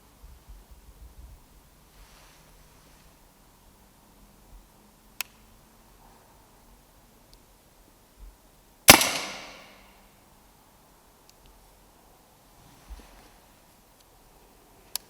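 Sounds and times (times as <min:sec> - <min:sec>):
air rifle shot: 0:08.9 - 0:09.9.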